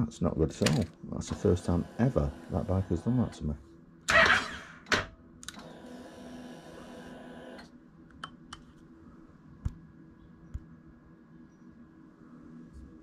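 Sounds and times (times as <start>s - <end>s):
motorcycle electrics whirring: 0.0s - 8.5s.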